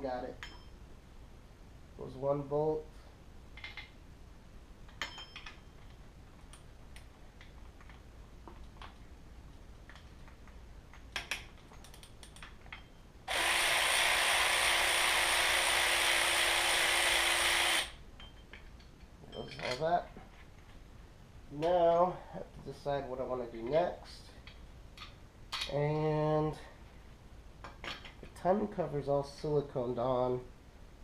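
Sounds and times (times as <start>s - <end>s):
tools clicking: 9.9s - 12.9s
electric ratchet spinning bolt: 13.3s - 18.0s.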